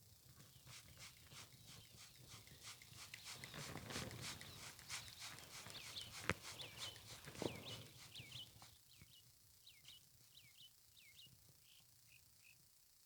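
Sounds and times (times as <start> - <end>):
faint bird chirps: 0.4 - 12.7
spray bottle squirts: 0.7 - 8.4.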